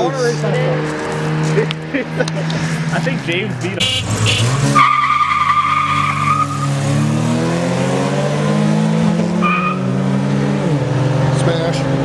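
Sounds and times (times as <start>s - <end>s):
car engine revving: 0.3s - 12.0s
tyres squealing: 3.8s - 6.7s.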